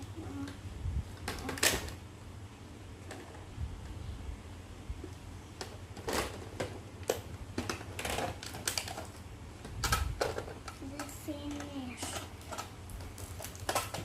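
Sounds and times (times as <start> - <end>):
plastic clicks: 9.8 - 14.0.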